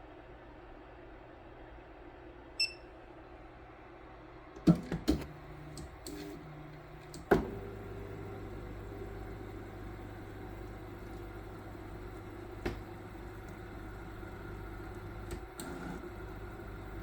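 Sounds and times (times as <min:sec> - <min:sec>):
printer motor hum: 0:04.7 - 0:17.0.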